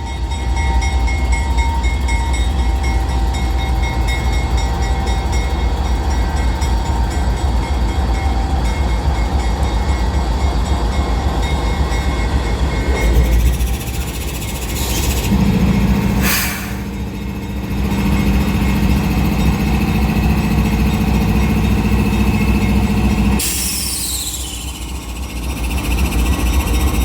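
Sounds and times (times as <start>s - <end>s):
diesel locomotive rumble: 0.0s - 27.0s
brief hiss: 16.2s - 16.9s.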